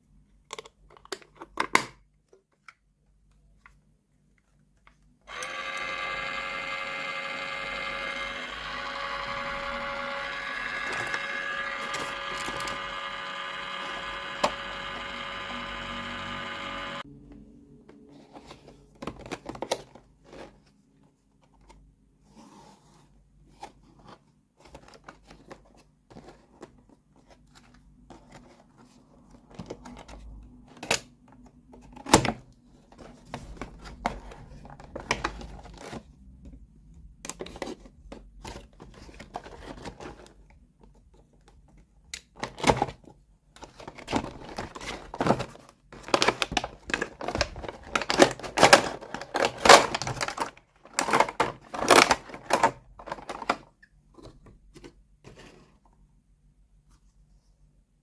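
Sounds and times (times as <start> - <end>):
packaging crinkling: 44.2 - 53.6.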